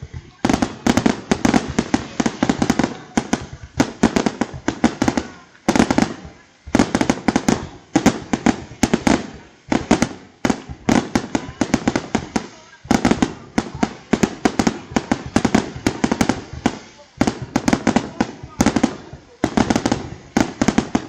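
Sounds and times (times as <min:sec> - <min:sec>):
fireworks bangs and cracks: 0:00.0 - 0:21.0.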